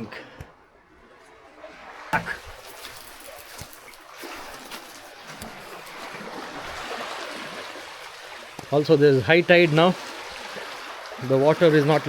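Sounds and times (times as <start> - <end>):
sea water surging over rocks: 2.1 - 12.0
sharp knocks: 2.2 - 2.6.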